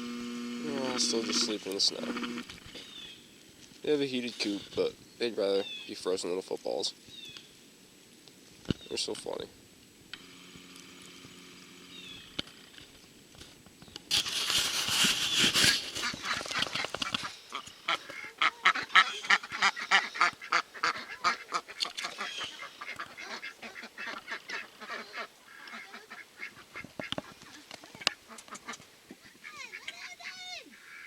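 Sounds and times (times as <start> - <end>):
ducks quacking: 15.3 - 31.0.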